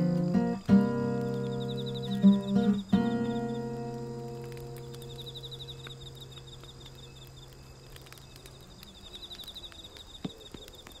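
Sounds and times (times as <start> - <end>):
campfire crackling and popping: 0.0 - 11.0
insects chirping trill: 0.0 - 11.0.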